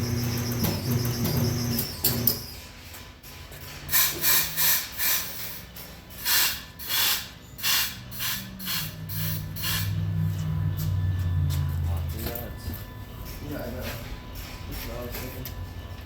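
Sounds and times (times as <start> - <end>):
machine humming: 0.0 - 2.4
air hissing bursts: 3.9 - 5.6, 6.2 - 10.0.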